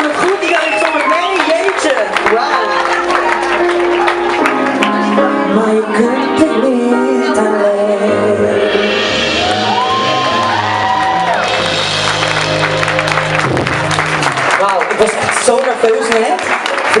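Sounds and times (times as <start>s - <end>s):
audience whooping and cheering: 0.0s - 5.0s, 9.1s - 15.1s
live band music with singing: 0.0s - 16.1s.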